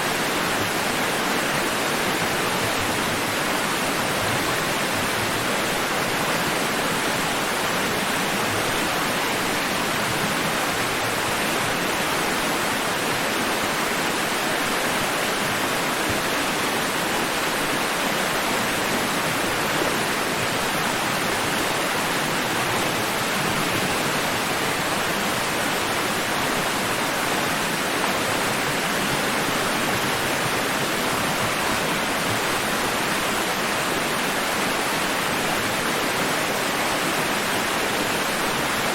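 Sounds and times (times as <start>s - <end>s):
water rushing: 0.0s - 38.9s.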